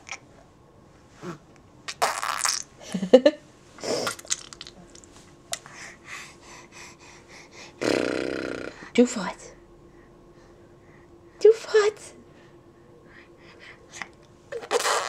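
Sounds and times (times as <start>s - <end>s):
baby blowing raspberries: 7.8s - 8.8s, 14.6s - 15.0s.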